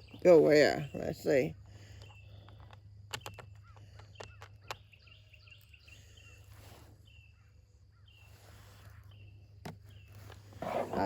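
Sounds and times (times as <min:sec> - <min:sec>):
bird chirping: 0:00.0 - 0:11.0
light clicks of plastic parts: 0:02.0 - 0:04.9.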